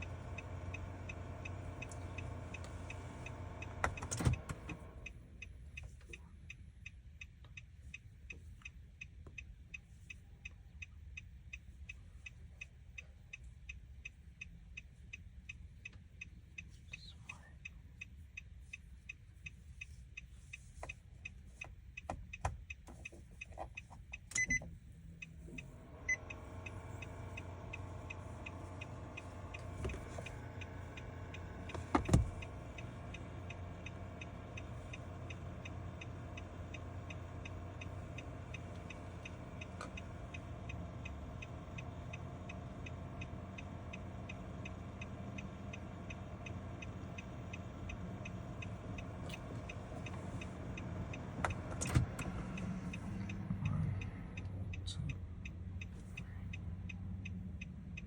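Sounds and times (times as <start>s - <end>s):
steady hum: 25.0s - 56.8s
rapid ticking: 25.2s - 55.9s.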